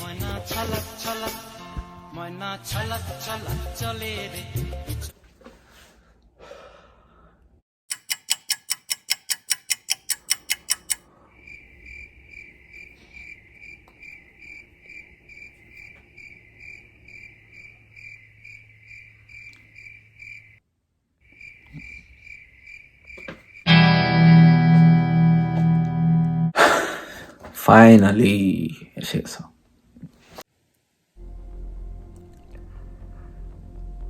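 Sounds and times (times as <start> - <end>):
rapid clicking: 7.9 - 11.0
cricket chirping: 9.8 - 20.6, 21.2 - 24.1.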